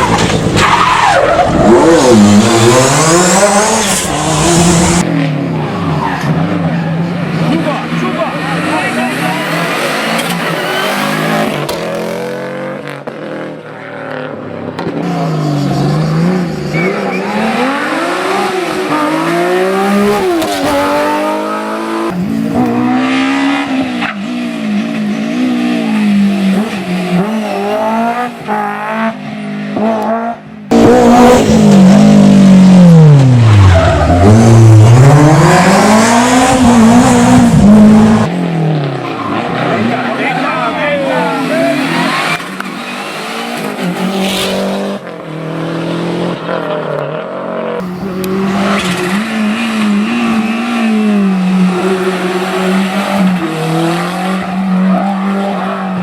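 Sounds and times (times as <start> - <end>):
rally car engines revving: 0.0 - 56.0.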